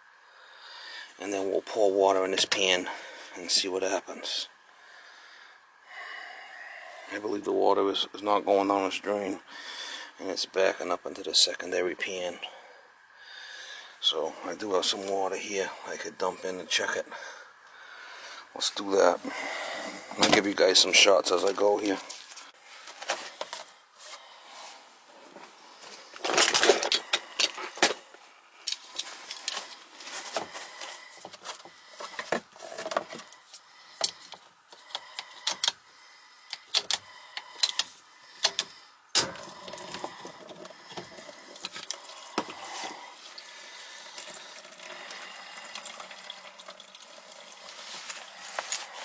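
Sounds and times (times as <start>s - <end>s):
water being poured: 39.2s - 49.0s.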